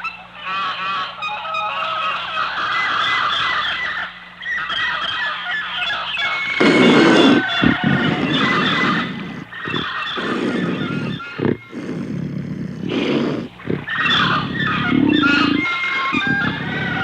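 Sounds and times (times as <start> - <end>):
high-pitched animal calls: 0.0 - 17.0
big cat growling: 6.4 - 17.0.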